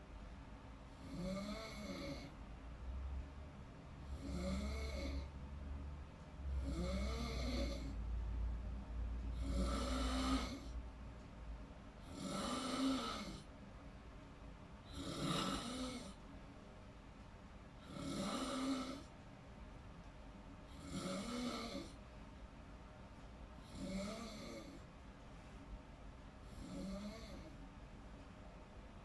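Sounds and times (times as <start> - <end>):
person snoring: 1.0 - 2.3, 4.1 - 5.3, 6.6 - 7.9, 9.4 - 10.7, 12.0 - 13.4, 14.9 - 16.2, 17.8 - 19.0, 20.7 - 22.0, 23.7 - 24.8, 26.5 - 27.5.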